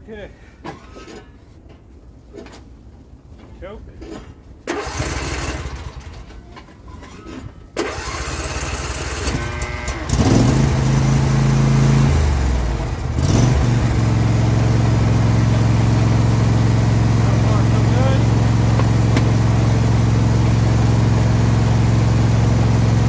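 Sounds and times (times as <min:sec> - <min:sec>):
lawn tractor engine starting: 0:04.6 - 0:23.0.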